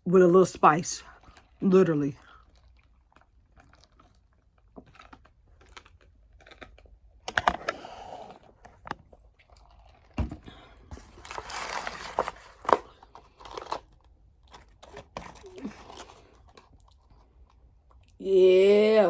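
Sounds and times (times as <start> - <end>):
paper rustling: 10.9 - 13.9.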